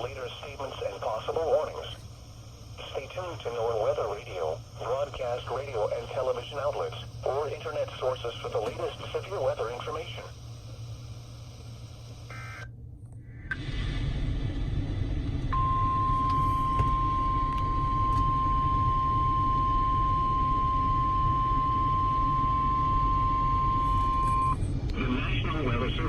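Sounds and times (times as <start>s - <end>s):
radio receiver hiss: 0.0s - 12.6s
steady high alarm tone: 15.5s - 24.6s.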